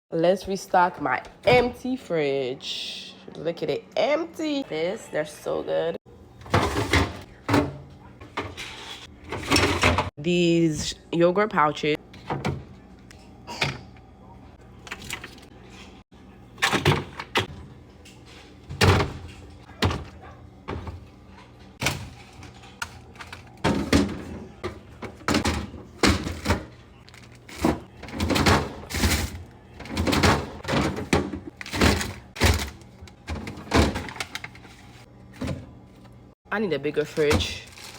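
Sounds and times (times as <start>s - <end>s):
plastic rustling: 26.3s - 28.3s, 37.1s - 37.9s
packages knocking on shelves: 27.5s - 34.2s.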